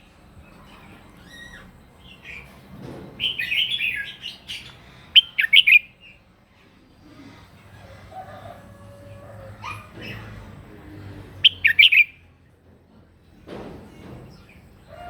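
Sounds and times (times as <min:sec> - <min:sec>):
bird chirping song: 0:00.0 - 0:06.3, 0:11.4 - 0:12.3.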